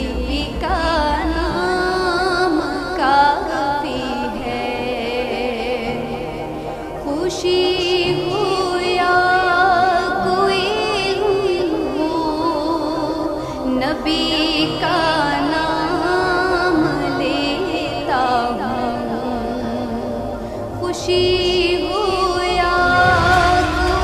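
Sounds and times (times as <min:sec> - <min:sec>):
steady held drone: 0:17.2 - 0:24.0.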